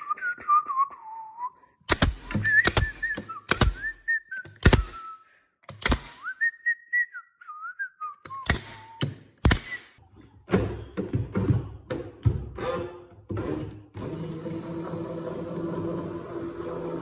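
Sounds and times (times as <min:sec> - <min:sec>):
recliner couch motor humming: 0:13.9 - 0:17.0.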